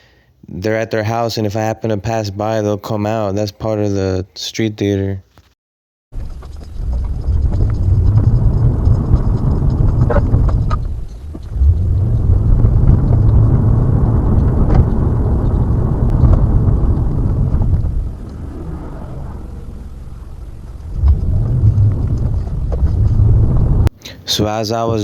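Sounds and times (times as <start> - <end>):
car road and engine rumble: 6.2 - 23.9.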